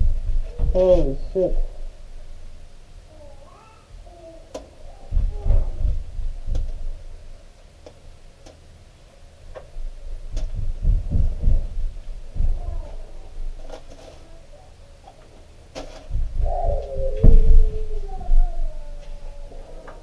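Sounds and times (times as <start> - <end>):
low handling thumps: 0.0 - 2.4, 5.1 - 7.1, 9.6 - 13.6, 16.1 - 20.0.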